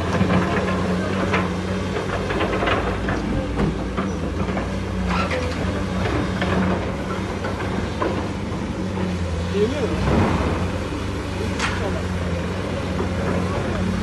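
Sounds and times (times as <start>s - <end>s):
construction machine engine hum: 0.0s - 14.0s
metallic clanks and squeals: 4.0s - 5.7s.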